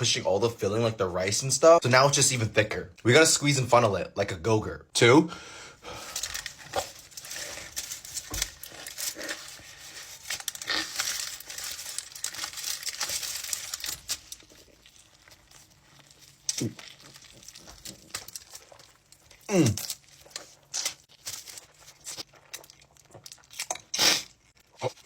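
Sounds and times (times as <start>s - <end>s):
wrapper crinkling: 6.0s - 23.7s
chewing and mouth noises: 14.0s - 25.0s.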